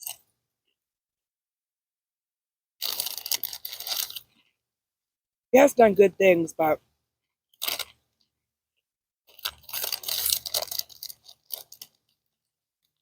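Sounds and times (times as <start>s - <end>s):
crunching and rustling while eating: 2.8s - 4.6s, 7.6s - 8.2s, 9.3s - 12.2s.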